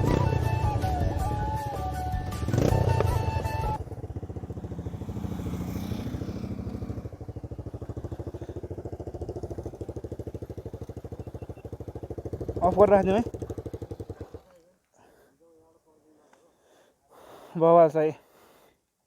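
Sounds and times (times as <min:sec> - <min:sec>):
motorcycle idling: 0:00.0 - 0:14.6.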